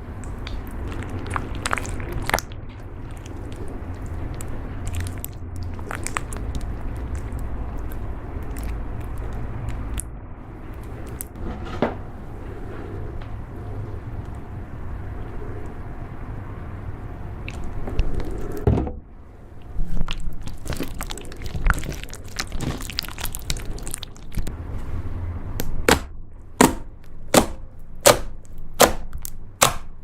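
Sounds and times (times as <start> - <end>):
slime squishing and crackling: 0.0 - 11.4, 17.4 - 18.6, 19.6 - 24.5
sharp slime pops: 25.6 - 29.9.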